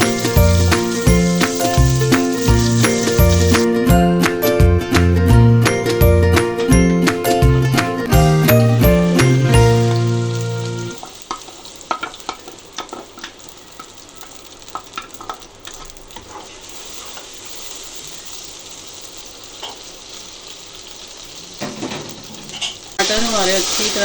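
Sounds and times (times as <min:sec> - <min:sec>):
spoon scraping and knocking pan: 0:00.0 - 0:03.7
tomatoes sizzling in a pan: 0:00.0 - 0:24.0.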